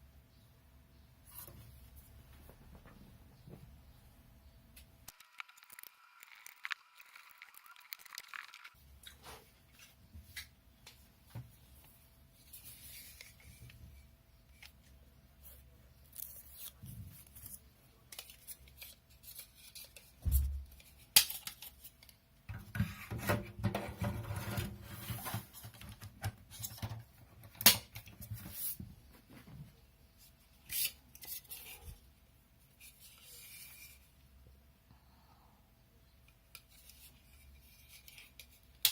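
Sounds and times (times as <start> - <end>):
faint steady hum: 0.0 - 38.9.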